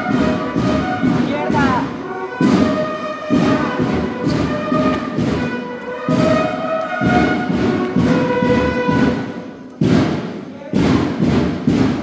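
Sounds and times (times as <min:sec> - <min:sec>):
bugle notes: 0:00.0 - 0:09.4
steady drum beat: 0:00.0 - 0:12.0.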